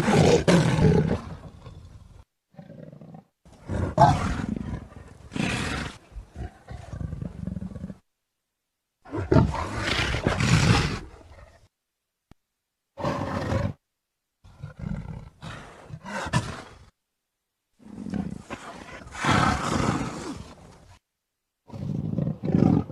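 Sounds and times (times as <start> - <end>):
leopard roaring: 0.0 - 8.0, 9.0 - 11.6, 13.0 - 13.8, 14.4 - 16.9, 17.8 - 20.8, 21.6 - 22.9.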